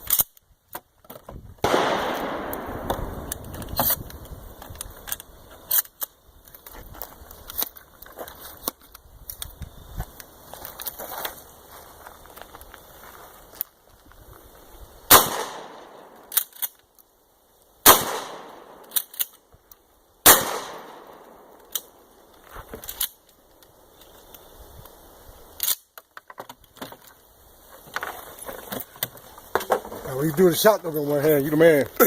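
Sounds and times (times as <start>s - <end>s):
shotgun shots: 1.6s - 3.2s, 15.1s - 16.2s, 17.8s - 18.8s, 20.2s - 21.4s.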